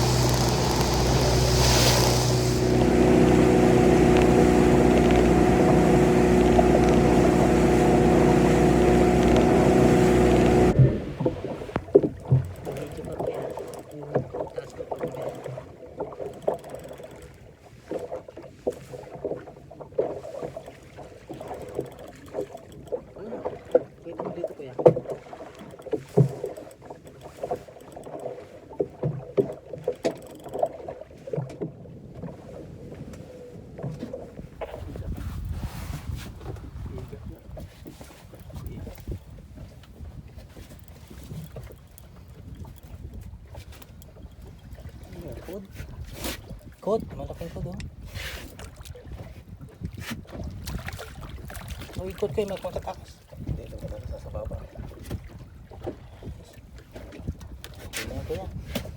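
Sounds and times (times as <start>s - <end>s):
boat engine running: 0.0s - 17.4s, 20.2s - 30.9s, 33.5s - 48.1s.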